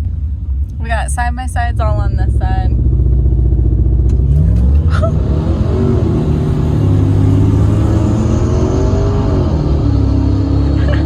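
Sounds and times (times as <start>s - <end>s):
vehicle engine revving hard: 3.7s - 11.0s.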